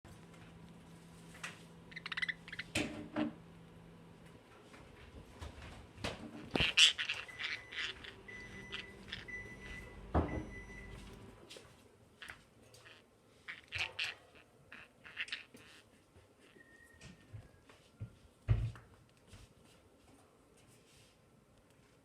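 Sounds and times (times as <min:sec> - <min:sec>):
budgies chirping and chattering: 0:01.9 - 0:02.7, 0:06.5 - 0:09.9, 0:12.2 - 0:15.8.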